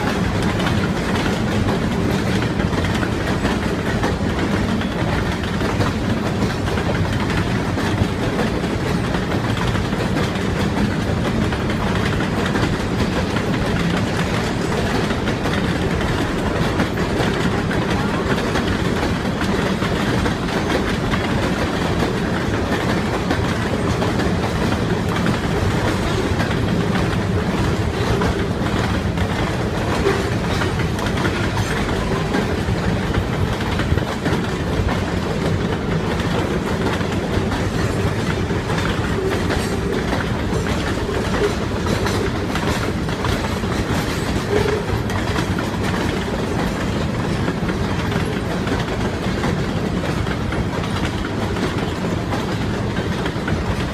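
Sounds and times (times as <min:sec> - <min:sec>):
freight train rumbling past: 0:00.0 - 0:53.9
wheels clacking over rail joints: 0:00.0 - 0:53.9.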